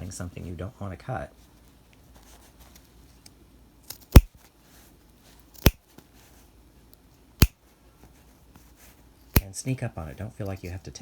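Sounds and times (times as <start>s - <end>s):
scissors snipping fabric: 3.9s - 4.3s, 5.6s - 5.8s.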